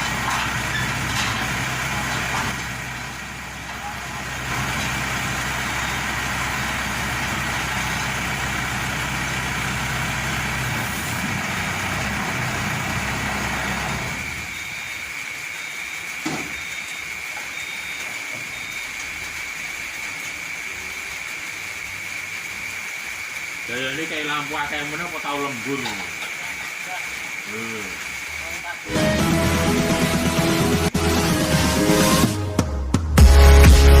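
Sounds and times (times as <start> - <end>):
harvester engine idling: 0.0 - 31.3.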